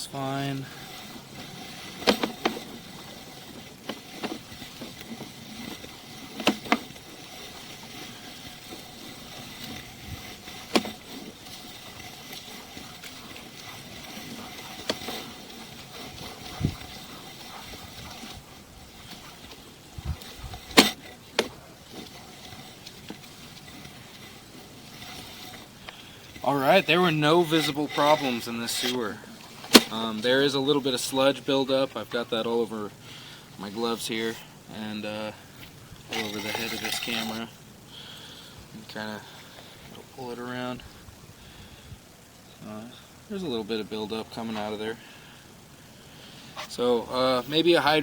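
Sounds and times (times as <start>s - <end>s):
cable being pulled by hand: 0.0s - 37.6s, 46.3s - 48.0s
faint steady hiss: 0.0s - 48.0s
sharp clicks and knocks: 0.9s - 26.4s, 27.5s - 30.1s.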